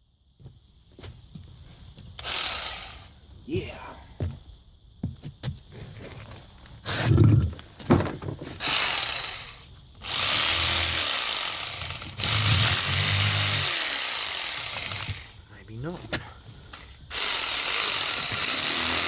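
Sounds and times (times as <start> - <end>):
power tool motor: 2.2 - 3.2, 8.6 - 15.4, 16.7 - 19.0.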